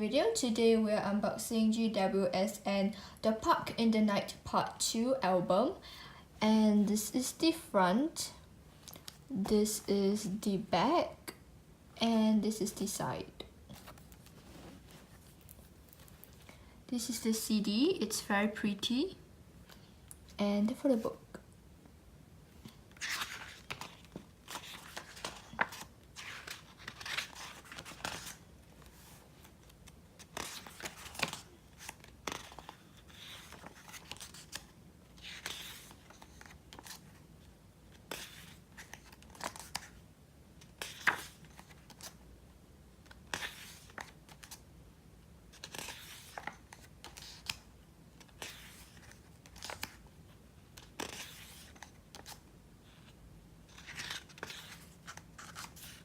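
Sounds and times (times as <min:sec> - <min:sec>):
book pages turning: 0:13.7 - 0:16.6, 0:22.7 - 0:37.2, 0:37.9 - 0:40.0, 0:40.6 - 0:42.2, 0:43.0 - 0:44.6, 0:45.5 - 0:50.0, 0:50.7 - 0:56.0.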